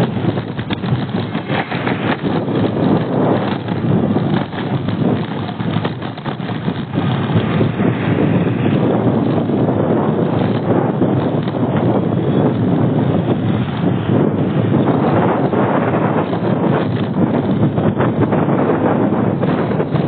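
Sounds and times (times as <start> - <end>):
road traffic rush: 0.0 - 20.0
wind buffeting microphone: 0.0 - 20.0.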